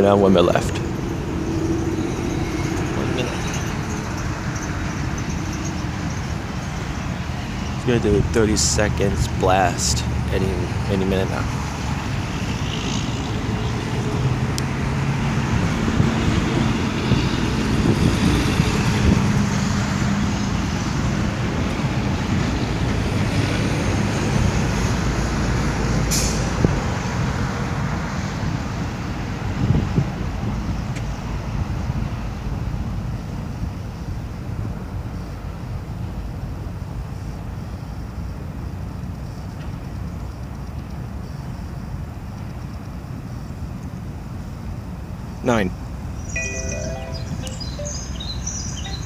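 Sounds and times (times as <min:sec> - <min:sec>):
vehicle engines rumbling: 0:00.0 - 0:27.4.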